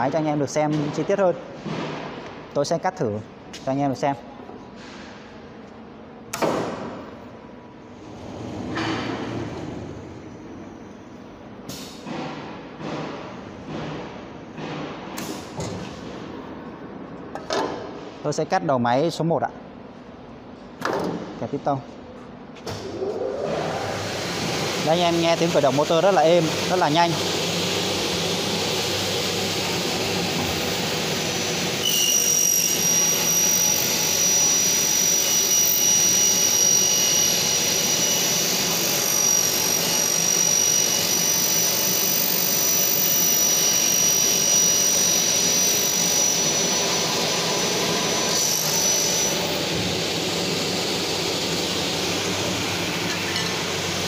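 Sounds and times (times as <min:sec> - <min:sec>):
saw motor running: 0:24.8 - 0:54.0
saw blade whining through metal: 0:30.6 - 0:49.7.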